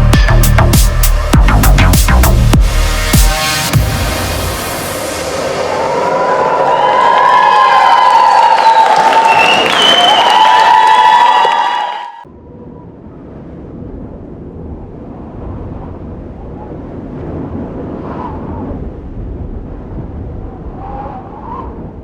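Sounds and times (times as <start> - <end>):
low rumbling hall ambience: 0.0 - 10.0.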